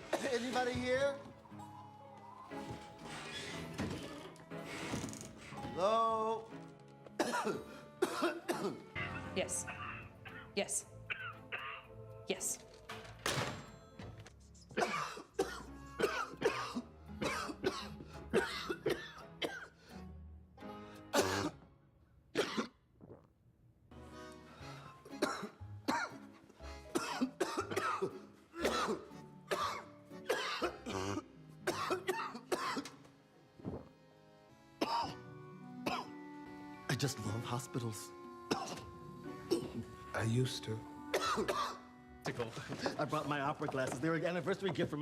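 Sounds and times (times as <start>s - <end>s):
faint music: 0.0s - 21.6s, 23.9s - 45.0s
man coughing harshly: 7.2s - 10.4s, 14.8s - 19.7s, 21.2s - 21.6s, 22.4s - 22.8s, 25.2s - 26.1s, 26.9s - 32.9s, 34.8s - 35.2s, 35.8s - 36.1s, 38.5s - 38.9s, 39.5s - 39.9s, 41.1s - 41.8s.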